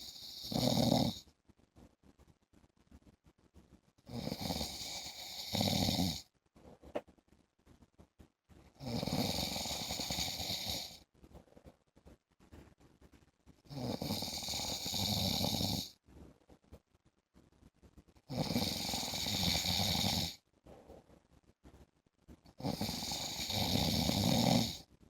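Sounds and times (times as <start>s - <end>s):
man snoring: 0.0s - 1.2s, 4.1s - 6.2s, 8.8s - 11.0s, 13.7s - 15.9s, 18.3s - 20.4s, 22.6s - 24.8s.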